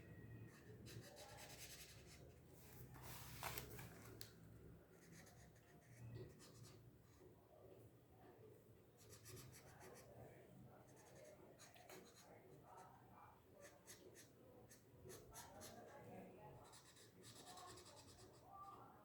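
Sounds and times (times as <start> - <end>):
coloring strokes scratching on paper: 0.4 - 3.6, 4.9 - 7.3, 10.9 - 12.8, 13.6 - 18.6.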